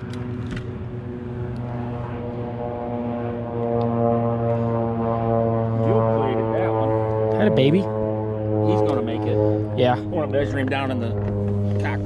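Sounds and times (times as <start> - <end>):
boat engine droning: 0.0 - 12.0.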